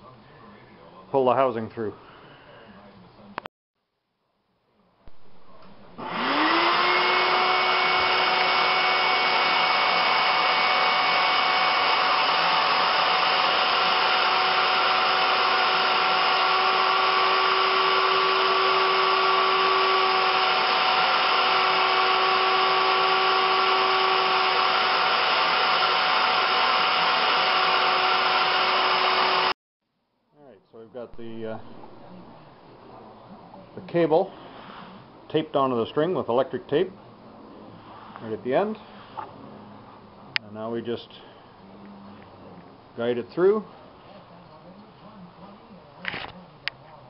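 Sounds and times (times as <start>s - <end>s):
shop vac motor running: 5.1s - 29.6s.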